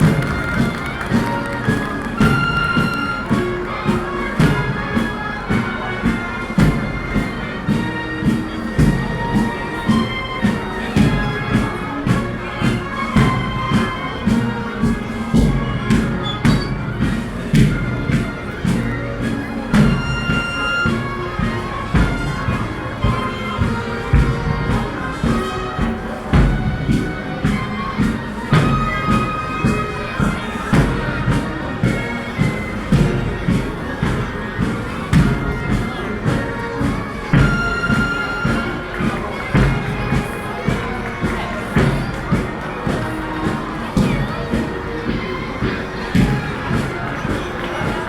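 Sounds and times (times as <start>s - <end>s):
drum beat: 0.0s - 3.8s, 15.3s - 18.8s, 24.1s - 25.4s
wind instruments sustained notes: 0.0s - 43.2s
marching band playing: 0.0s - 48.0s.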